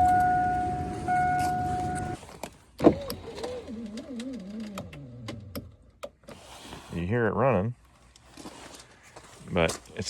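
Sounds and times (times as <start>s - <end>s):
power window motor whining: 0.0s - 2.2s.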